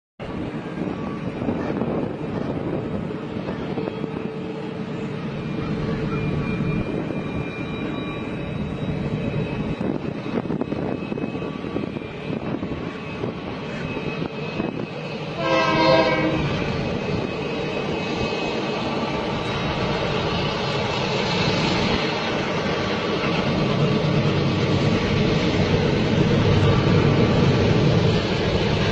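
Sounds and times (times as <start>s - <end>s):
train rumbling: 0.2s - 28.9s
train horn blast: 15.3s - 16.7s.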